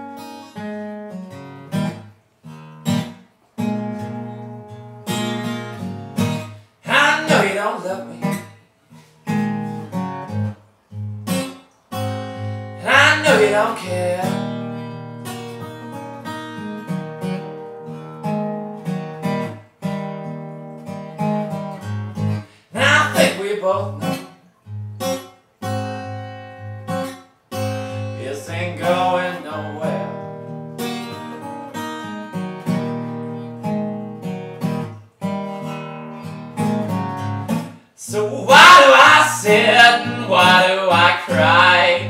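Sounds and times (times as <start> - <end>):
acoustic blues guitar: 0.0 - 42.0
person singing: 12.8 - 14.5, 22.7 - 24.2, 28.2 - 30.2, 38.0 - 42.0.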